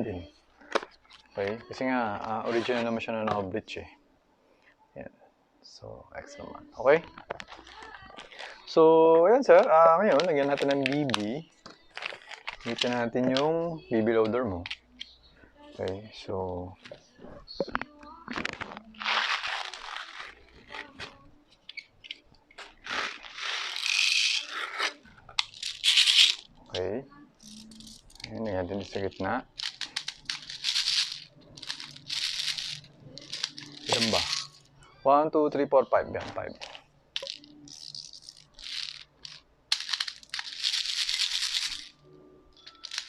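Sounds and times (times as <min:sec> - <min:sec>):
plastic scraping and crunching: 0:09.6 - 0:13.7, 0:17.6 - 0:26.6, 0:27.6 - 0:34.7.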